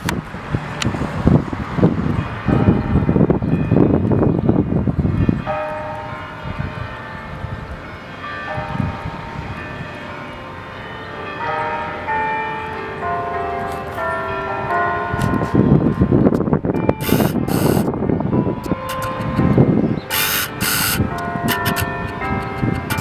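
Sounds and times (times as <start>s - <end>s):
church bells ringing tune: 1.2s - 17.0s.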